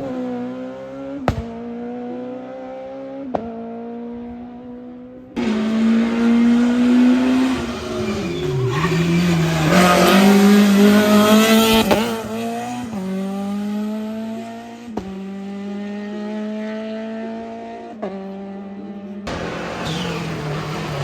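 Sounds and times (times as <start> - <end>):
race car engine passing: 4.8 - 21.0.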